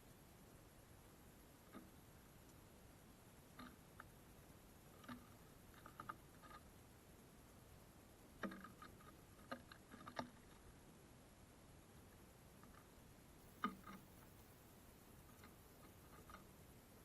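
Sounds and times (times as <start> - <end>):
birds pecking at a feeder: 1.3 - 10.9, 12.1 - 17.0.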